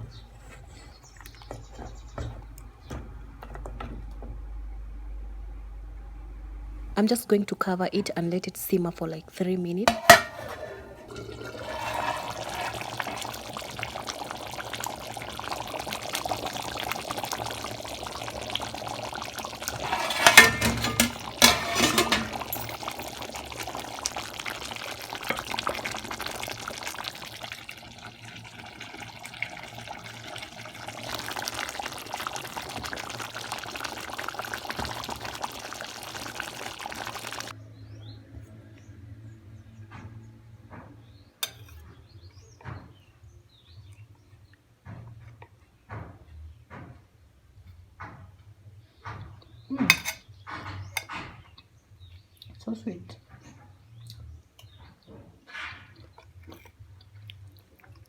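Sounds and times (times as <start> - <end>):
loud metallic clanks: 9.9 - 12.2, 19.8 - 22.5.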